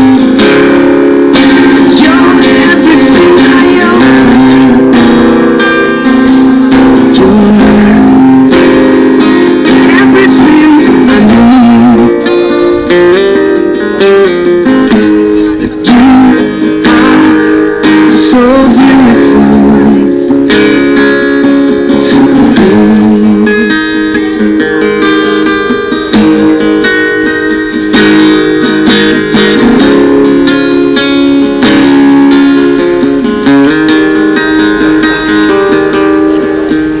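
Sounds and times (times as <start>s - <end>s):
acoustic guitar strumming chords: 0.0s - 37.0s
person singing: 1.4s - 25.2s.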